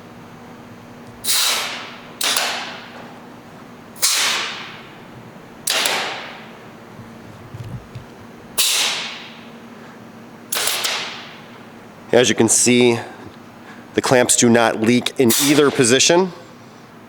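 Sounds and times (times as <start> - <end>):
compressed air hissing: 1.2 - 2.9, 4.0 - 4.8, 8.6 - 9.4, 15.2 - 15.8.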